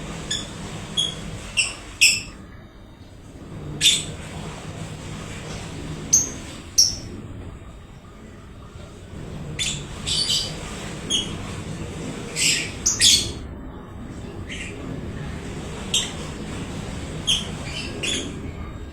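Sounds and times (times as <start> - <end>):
lovebird chirping and squawking: 0.3 - 2.4, 9.6 - 11.4, 12.3 - 13.4, 14.5 - 14.8, 15.9 - 16.3, 17.2 - 18.4.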